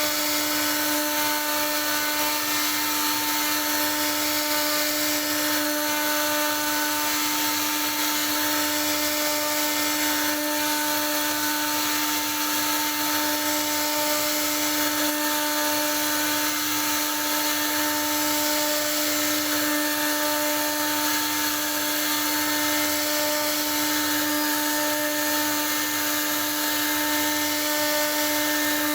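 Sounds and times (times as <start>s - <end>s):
router spindle whining: 0.0s - 28.9s.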